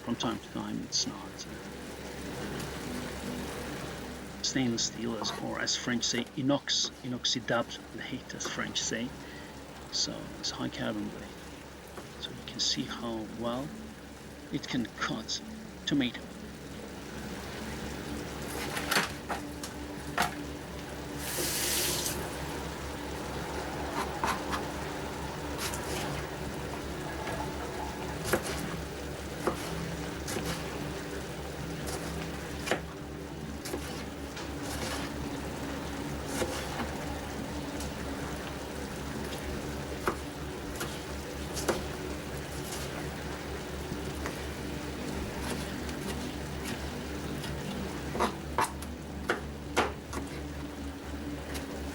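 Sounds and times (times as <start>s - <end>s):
low hum: 0.0s - 51.9s
short wet hiss: 21.2s - 22.3s.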